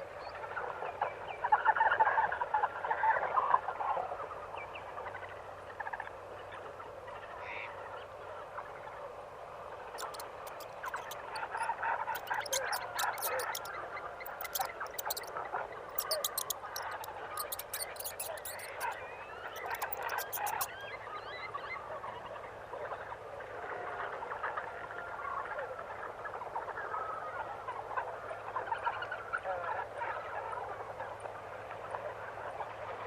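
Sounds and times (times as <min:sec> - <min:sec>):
sharp clicks: 0:10.0 - 0:13.7, 0:14.3 - 0:15.3, 0:15.9 - 0:19.0, 0:19.6 - 0:20.8.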